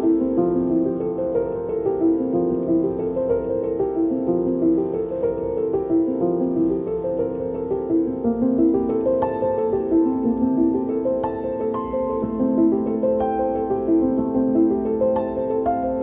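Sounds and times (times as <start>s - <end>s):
gentle piano piece: 0.0s - 16.0s.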